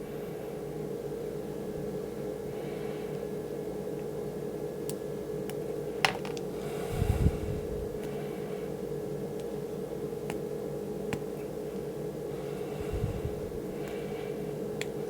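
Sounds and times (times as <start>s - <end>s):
steady hum: 0.0s - 15.0s.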